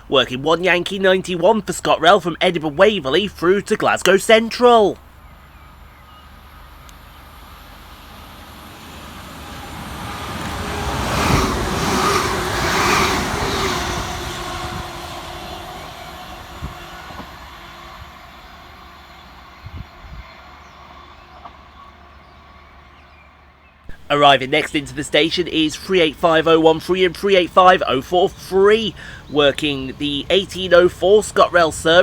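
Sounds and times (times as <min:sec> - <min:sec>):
electric train passing: 0:00.0 - 0:32.0.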